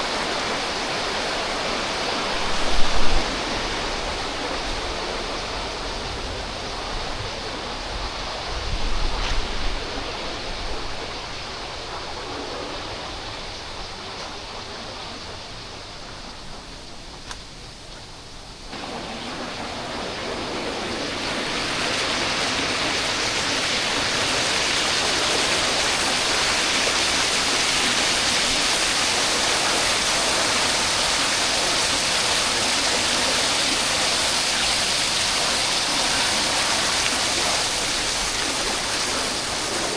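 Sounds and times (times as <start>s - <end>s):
waterfall rushing: 0.0s - 6.8s, 18.7s - 39.9s.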